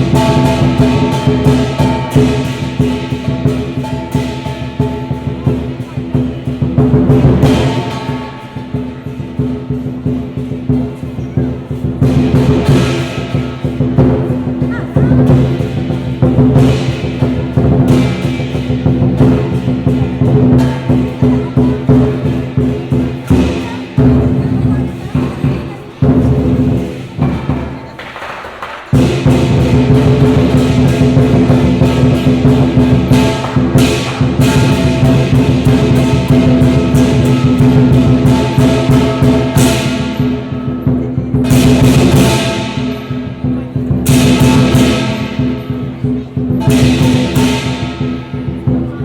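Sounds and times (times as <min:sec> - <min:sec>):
metallic ringing: 0:00.0 - 0:14.6
cymbal crashes: 0:00.0 - 0:24.9, 0:28.9 - 0:48.8
rapid drum beat: 0:00.0 - 0:49.0.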